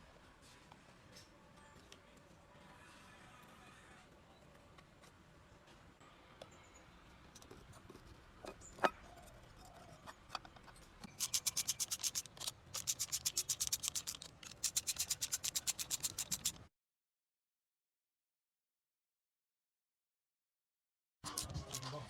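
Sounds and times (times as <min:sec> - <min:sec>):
rapid rubbing strokes: 0:11.2 - 0:16.6.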